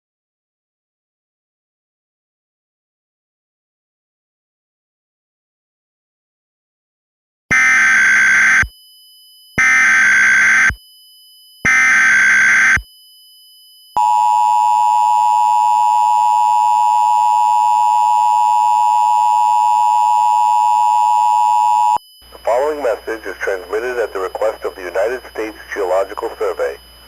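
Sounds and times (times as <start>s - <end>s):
digital data tone bursts: 21.2s - 27.0s.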